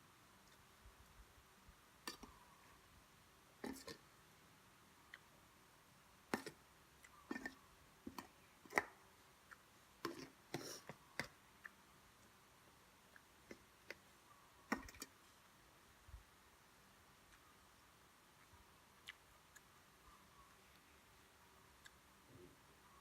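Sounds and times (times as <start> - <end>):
person chewing and eating: 6.3 - 14.1, 17.1 - 20.9, 21.7 - 22.6.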